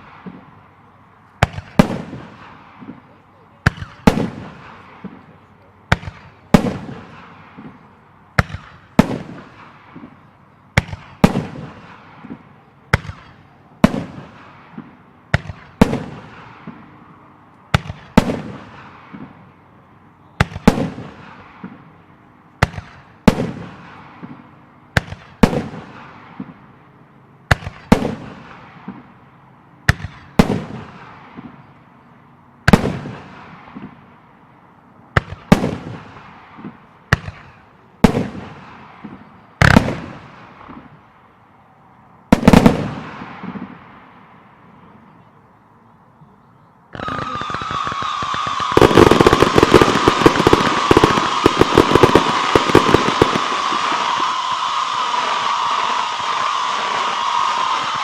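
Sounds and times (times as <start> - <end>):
firework shells bursting: 47.0 - 58.0.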